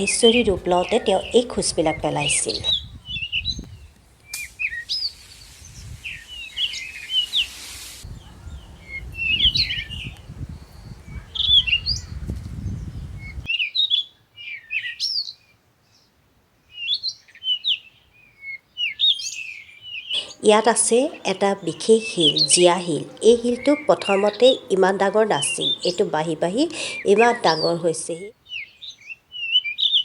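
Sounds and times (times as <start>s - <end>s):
birds chirping: 0.0s - 30.0s.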